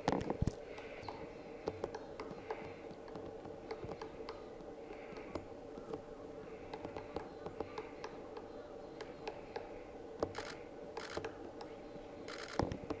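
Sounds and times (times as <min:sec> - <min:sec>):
faint steady hum: 0:00.0 - 0:13.0
camera shutters clicking: 0:10.3 - 0:11.2, 0:12.3 - 0:12.6
rasping shutter bursts: 0:10.3 - 0:11.3, 0:12.3 - 0:12.6.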